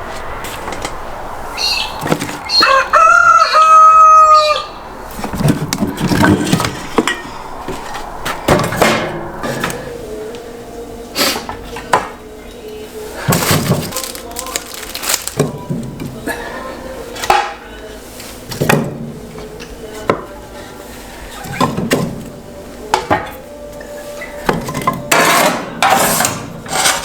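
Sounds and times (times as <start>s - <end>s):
rooster crowing: 1.5s - 4.9s
rustling: 12.9s - 16.1s.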